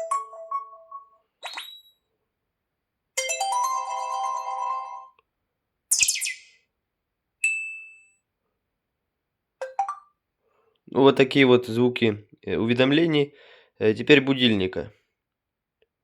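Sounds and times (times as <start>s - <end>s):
phone notification chimes: 9.6s - 10.1s.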